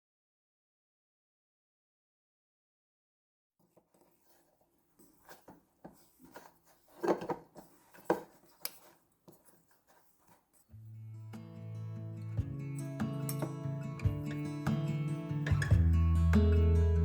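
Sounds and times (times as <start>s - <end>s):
dishes clattering: 7.0s - 8.4s
utensils and dishes clicking: 13.2s - 13.6s.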